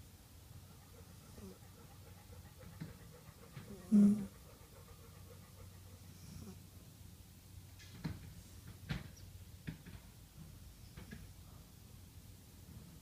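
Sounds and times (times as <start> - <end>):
pet breathing and snoring: 0.8 - 6.7.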